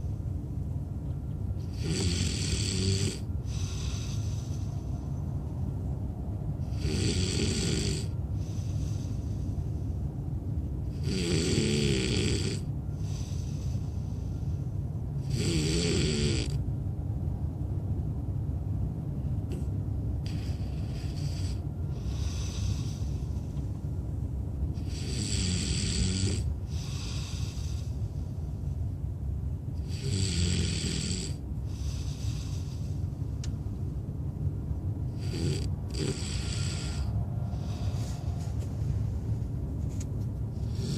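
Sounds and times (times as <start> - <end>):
steady low rumble: 0.0 - 40.9
man snoring: 1.6 - 4.7, 6.7 - 8.2, 10.9 - 13.6, 15.2 - 16.6, 19.5 - 23.3, 24.8 - 28.0, 29.8 - 32.9, 35.1 - 37.8, 40.5 - 40.9.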